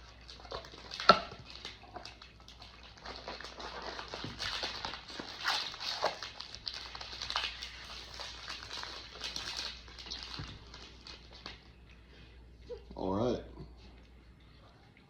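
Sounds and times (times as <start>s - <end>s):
sharp packaging crackles: 0.0s - 11.8s
packaging crinkling and rustling: 0.0s - 11.9s.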